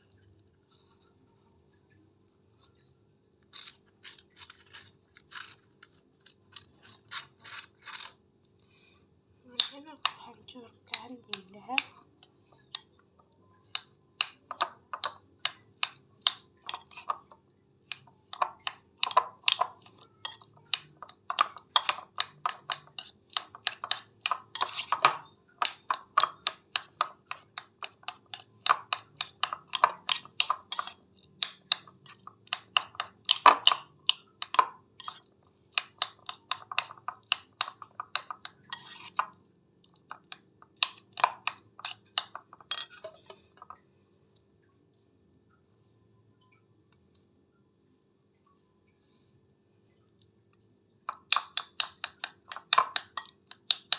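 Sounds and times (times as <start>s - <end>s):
spoon scraping against bowl: 2.6s - 8.2s, 13.6s - 39.4s, 40.0s - 43.8s, 51.1s - 53.9s.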